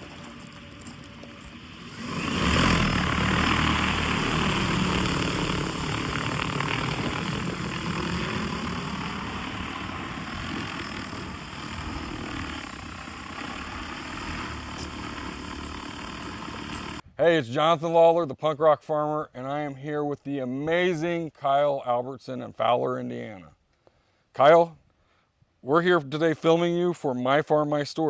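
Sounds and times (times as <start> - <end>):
drone propellers whirring: 0.0 - 17.0.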